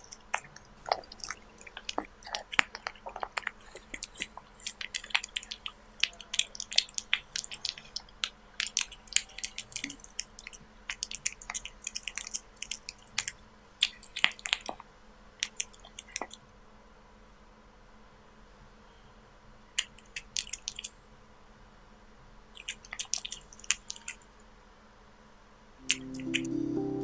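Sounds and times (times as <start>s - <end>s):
kitten chewing meat: 0.0s - 16.4s, 22.6s - 24.3s.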